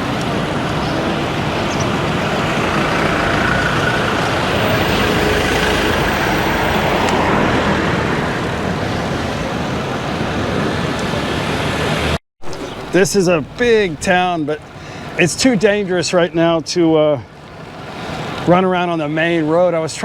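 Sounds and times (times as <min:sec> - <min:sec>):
road traffic roar: 0:00.0 - 0:12.2, 0:17.3 - 0:19.6.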